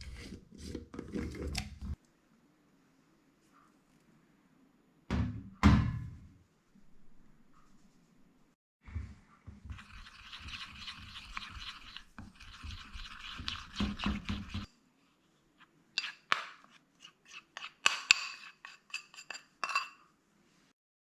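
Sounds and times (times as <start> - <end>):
utensil scraping in a bowl: 0.0 - 2.0, 9.6 - 20.1.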